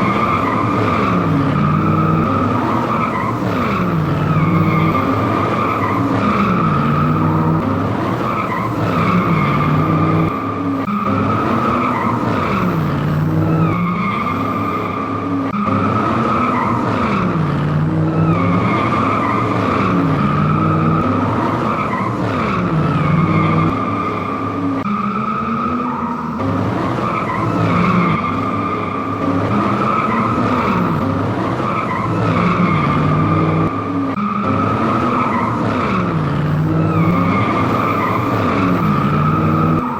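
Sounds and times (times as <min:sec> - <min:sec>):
tyre squeal: 0:00.0 - 0:07.6, 0:36.6 - 0:39.9
car engine revving: 0:00.0 - 0:39.9.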